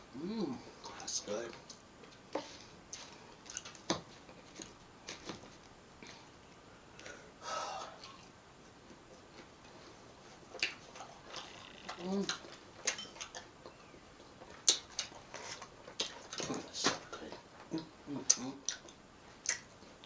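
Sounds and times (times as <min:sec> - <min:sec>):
person chewing food: 0:01.7 - 0:07.2, 0:08.0 - 0:16.5, 0:17.2 - 0:20.0
breathy sound: 0:07.0 - 0:08.0
mouth smacks: 0:10.5 - 0:13.8, 0:14.5 - 0:17.0, 0:17.7 - 0:19.7.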